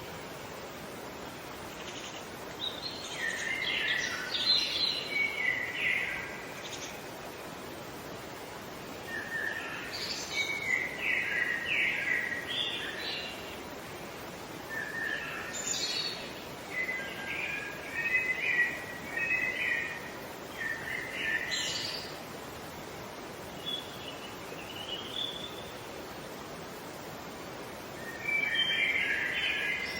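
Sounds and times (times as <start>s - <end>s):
songbird chirping: 0.0s - 7.2s, 8.8s - 29.9s
background hiss: 0.0s - 29.9s.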